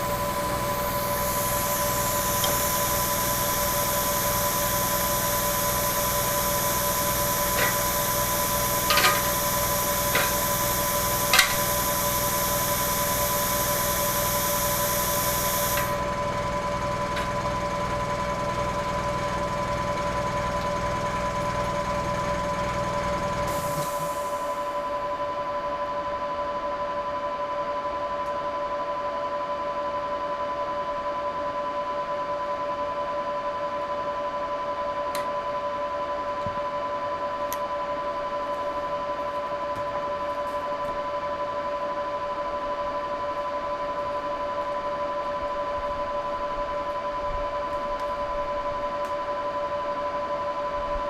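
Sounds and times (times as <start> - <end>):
plasma cutter hum and hiss: 0.0 - 25.4.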